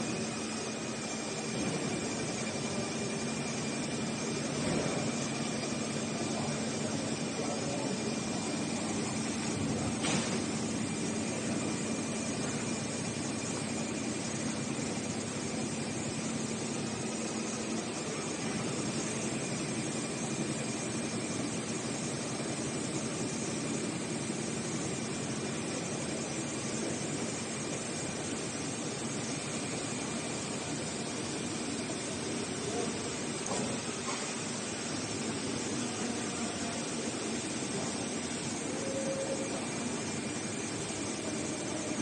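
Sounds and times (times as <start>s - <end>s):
faint hum: 34.9s - 42.0s.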